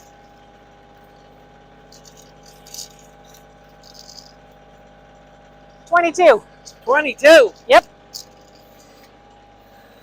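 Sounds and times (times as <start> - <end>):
light rattles: 0.0 - 10.0
tractor engine idling: 0.0 - 10.0.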